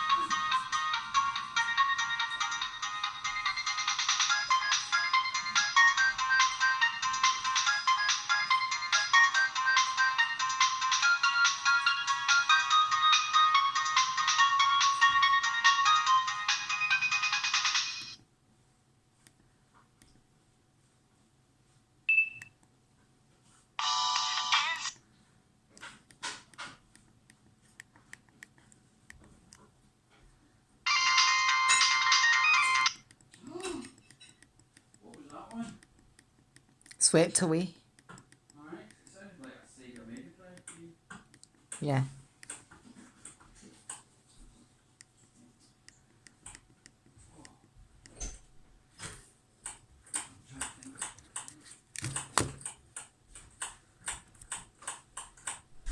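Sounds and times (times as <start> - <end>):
mobile phone ringtone: 0.0 - 18.2, 23.8 - 25.0, 30.9 - 33.0.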